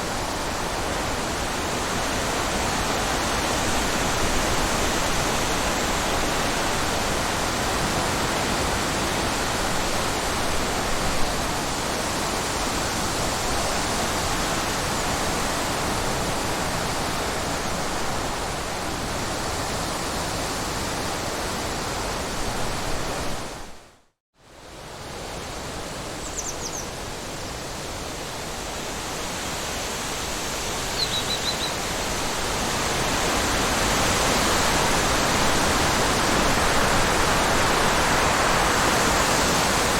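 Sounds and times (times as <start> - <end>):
rushing wind: 0.0 - 23.9, 24.7 - 39.9
high bird chirps: 26.2 - 26.8, 31.0 - 31.8.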